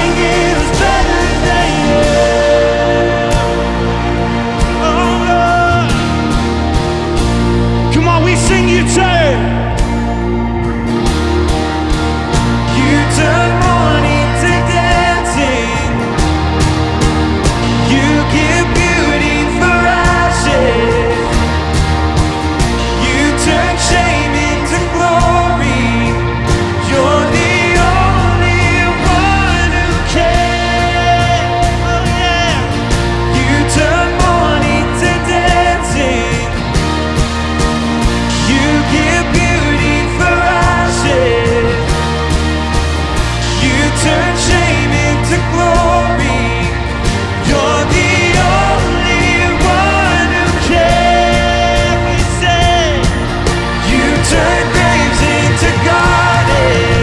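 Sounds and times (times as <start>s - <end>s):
lead vocal singing: 0.0s - 57.0s
steady drum beat: 0.0s - 57.0s
worship band playing: 0.0s - 57.0s.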